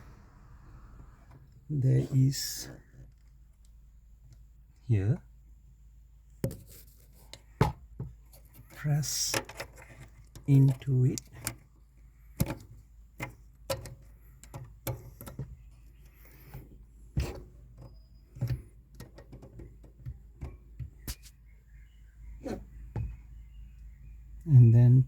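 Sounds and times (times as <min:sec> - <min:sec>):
faint low hum: 0:00.0 - 0:07.1.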